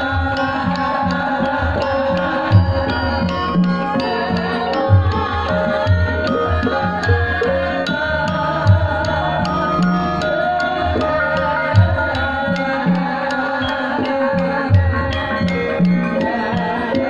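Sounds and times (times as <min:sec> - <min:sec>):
metallophones and gongs ringing: 0:00.0 - 0:12.6.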